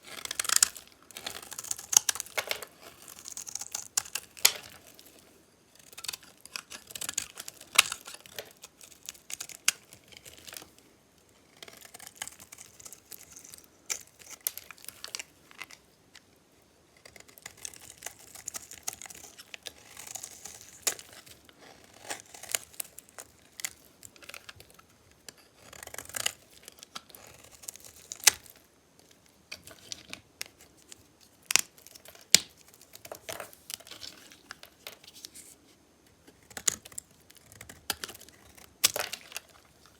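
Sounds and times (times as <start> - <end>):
knife cutting bar soap: 17.0 - 24.6.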